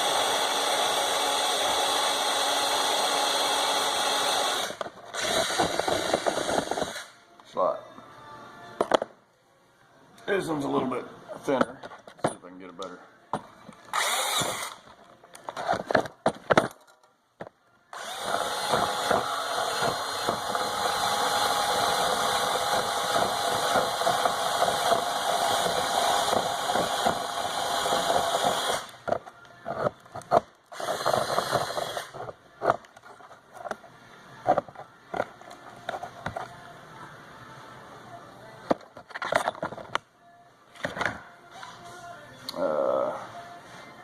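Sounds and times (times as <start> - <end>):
cordless drill whining: 0.0 - 7.1, 13.9 - 14.8, 18.0 - 28.9, 30.8 - 32.2.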